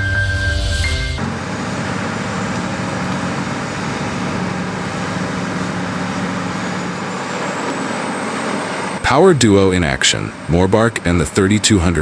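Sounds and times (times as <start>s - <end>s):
music: 0.0s - 1.2s
low engine hum: 0.0s - 12.0s.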